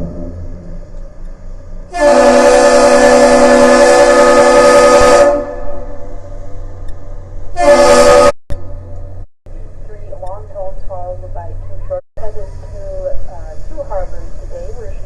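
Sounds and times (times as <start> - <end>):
ship air horn blast: 1.9 - 6.3, 7.5 - 8.4.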